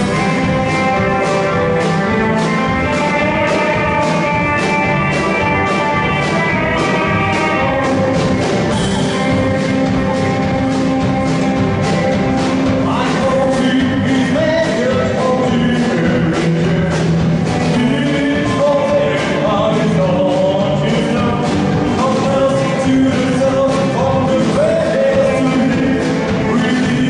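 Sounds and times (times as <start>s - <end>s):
live rock band: 0.0s - 27.0s
steady drum beat: 0.0s - 27.0s
person singing: 12.6s - 27.0s.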